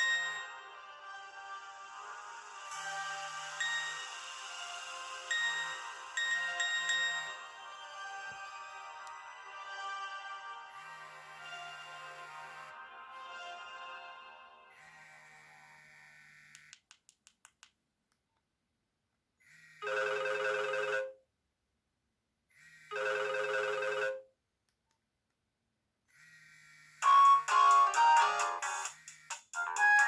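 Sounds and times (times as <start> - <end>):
phone ringtone melody: 0.0 - 12.7, 19.6 - 21.2, 22.6 - 24.3, 26.1 - 30.0.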